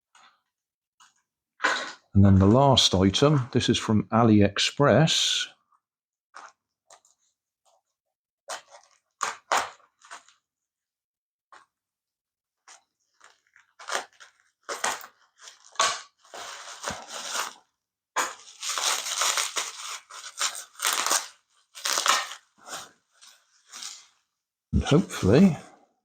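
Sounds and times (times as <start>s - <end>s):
packaging tearing and crinkling: 8.5s - 10.4s, 12.7s - 24.1s.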